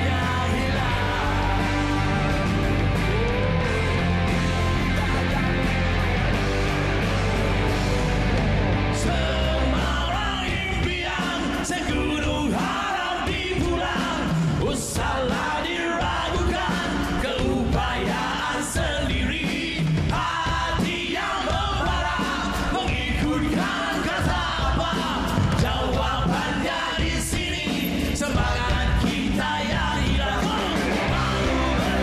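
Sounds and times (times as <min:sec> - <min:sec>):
person singing: 0:00.0 - 0:05.8, 0:08.9 - 0:32.0
live rock band playing: 0:00.0 - 0:32.0.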